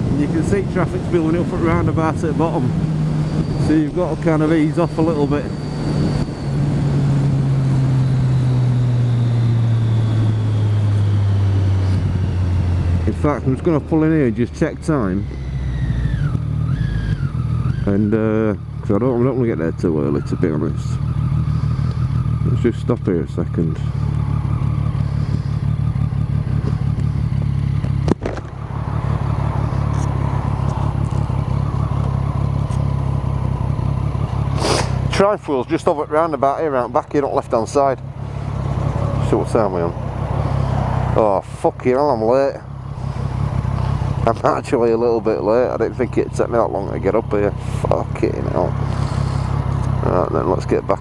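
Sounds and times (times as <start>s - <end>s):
wind rush: 0.0s - 13.0s
motorcycle engine running: 0.0s - 51.0s.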